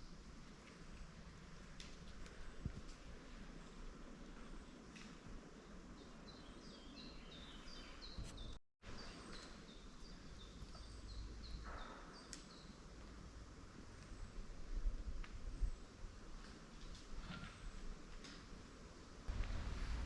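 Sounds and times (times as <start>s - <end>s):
faint background noise: 0.0s - 20.0s
songbird singing: 5.6s - 13.0s.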